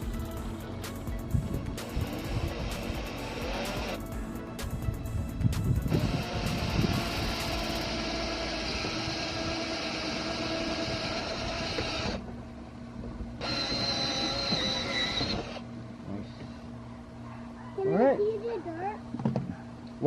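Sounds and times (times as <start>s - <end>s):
electric drill boring metal: 1.8s - 4.1s, 5.9s - 12.2s, 13.4s - 15.7s.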